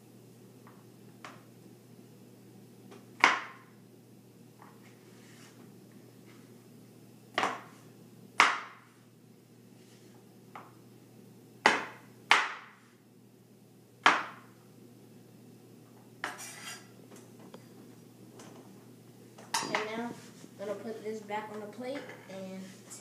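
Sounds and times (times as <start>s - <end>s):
knife chopping on cutting board: 3.2s - 3.6s, 7.3s - 7.8s, 8.4s - 8.9s, 11.6s - 12.8s, 14.0s - 14.5s
knife scraping board: 16.2s - 16.9s.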